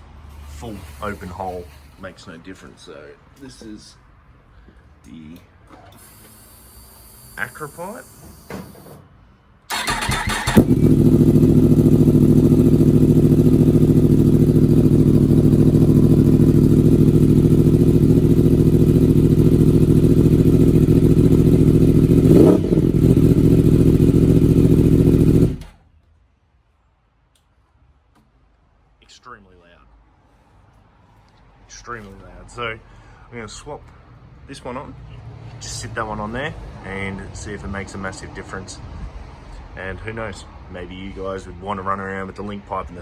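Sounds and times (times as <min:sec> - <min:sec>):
motorcycle engine starter cranking: 0:05.7 - 0:08.8, 0:09.7 - 0:12.0
motorcycle engine idling loud: 0:10.5 - 0:25.7.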